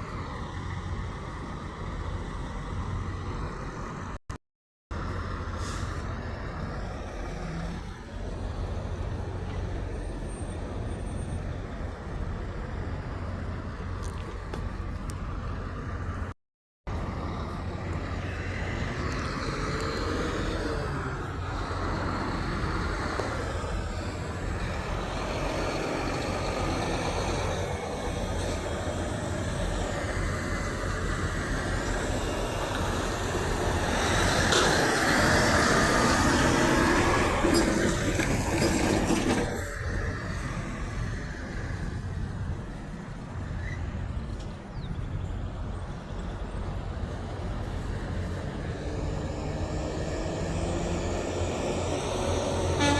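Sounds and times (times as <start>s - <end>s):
semi trucks passing: 0.0s - 4.2s, 4.9s - 52.9s.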